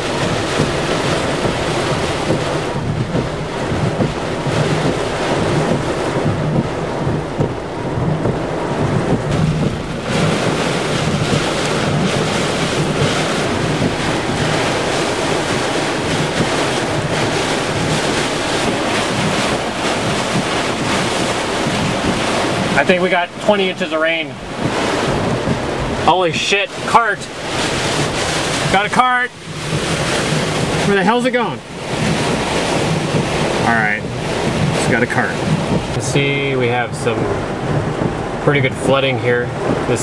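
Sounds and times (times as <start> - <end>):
torrential rain pouring: 0.0 - 40.0.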